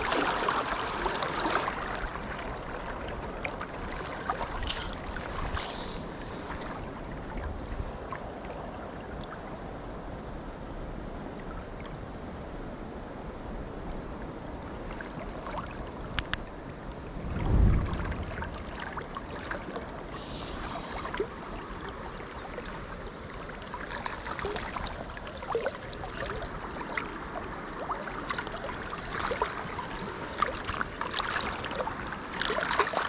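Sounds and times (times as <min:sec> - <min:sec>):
mountain stream rushing: 0:00.0 - 0:06.0
low thump: 0:17.2 - 0:18.5.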